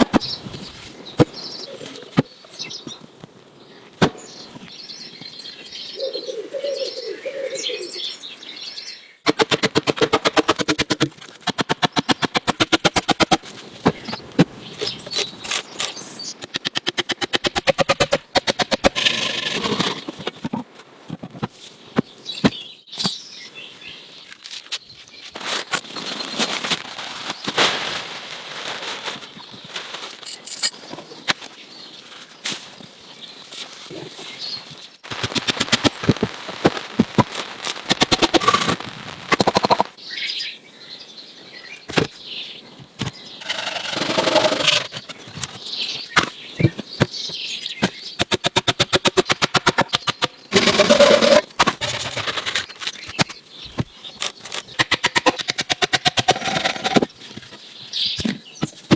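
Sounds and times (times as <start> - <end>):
fast even ticking: 9.3 - 13.4, 16.5 - 19.2, 54.8 - 57.0
knocks and clicks on wood: 16.4 - 19.0, 47.8 - 52.0
scraping on wood: 43.4 - 45.6, 48.2 - 53.4, 54.2 - 57.6.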